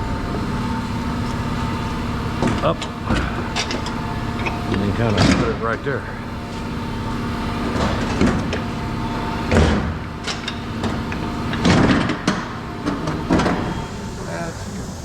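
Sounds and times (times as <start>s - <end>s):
mechanical hum: 0.0s - 15.0s
metal parts clanking and scraping: 2.4s - 6.7s, 7.7s - 13.9s.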